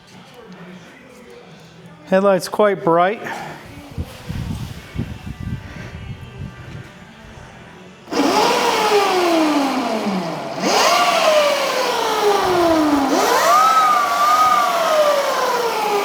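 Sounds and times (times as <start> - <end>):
electric motor whining: 8.1 - 16.0.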